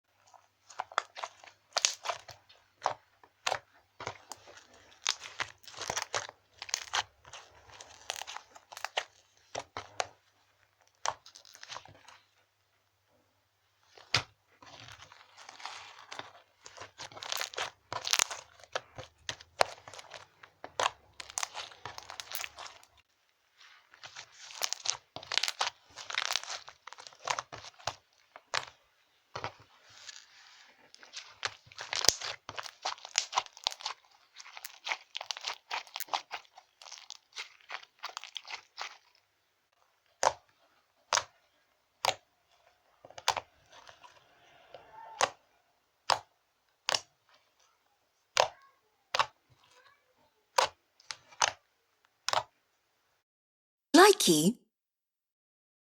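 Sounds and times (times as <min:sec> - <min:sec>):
slime crackling and popping: 0:00.3 - 0:10.2, 0:10.8 - 0:12.2, 0:13.9 - 0:23.0, 0:23.9 - 0:39.3, 0:40.0 - 0:44.2, 0:45.1 - 0:45.4, 0:46.0 - 0:47.5, 0:50.5 - 0:51.6.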